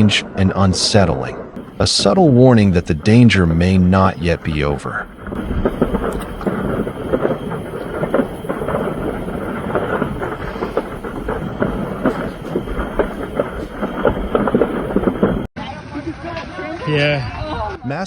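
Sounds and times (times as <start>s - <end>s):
fire crackling and popping: 1.6s - 15.5s.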